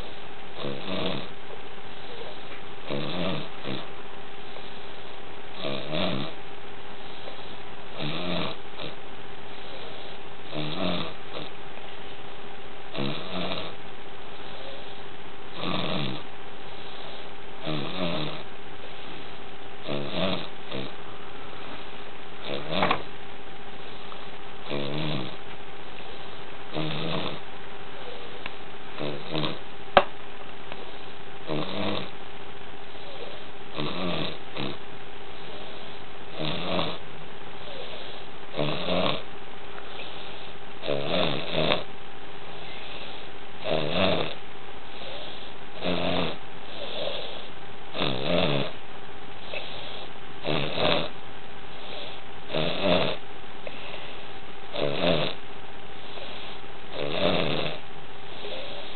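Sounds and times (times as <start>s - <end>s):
snoring: 0.0s - 1.4s, 2.0s - 3.9s, 5.5s - 6.4s, 7.1s - 11.5s, 12.9s - 13.8s, 14.4s - 18.5s, 19.8s - 21.0s, 22.4s - 23.1s, 23.9s - 25.4s, 26.1s - 27.4s, 28.0s - 29.6s, 30.8s - 32.1s, 32.9s - 34.8s, 35.4s - 37.0s, 37.6s - 39.3s, 39.9s - 41.9s, 42.6s - 48.8s, 49.4s - 51.2s, 51.8s - 53.9s, 54.7s - 55.4s, 56.0s - 58.9s
steady hum and hiss: 0.0s - 58.9s.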